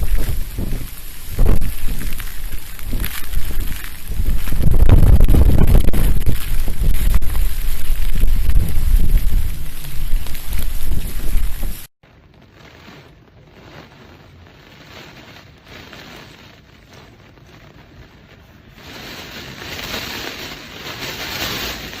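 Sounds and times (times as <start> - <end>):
hiss of storm wind and water: 0.0 - 11.9, 14.1 - 22.0
wind buffeting microphone: 0.0 - 11.9.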